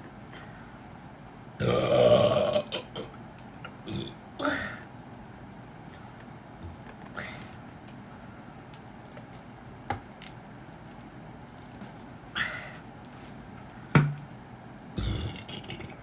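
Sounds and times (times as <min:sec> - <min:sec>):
woman gulping a drink: 0:15.0 - 0:16.0.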